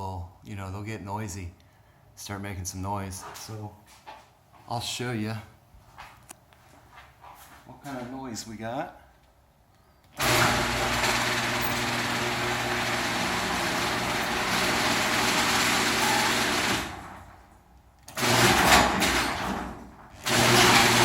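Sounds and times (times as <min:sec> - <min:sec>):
garage door opener whirring: 0:10.1 - 0:17.5, 0:18.1 - 0:21.0.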